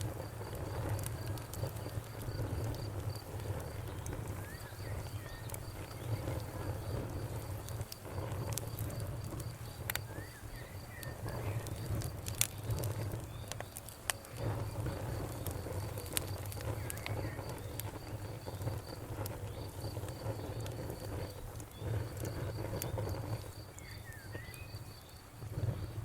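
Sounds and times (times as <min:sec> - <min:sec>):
cricket chirping: 0:00.0 - 0:26.0
wood fire crackling and popping: 0:00.0 - 0:26.0
bird chirps: 0:23.7 - 0:25.2.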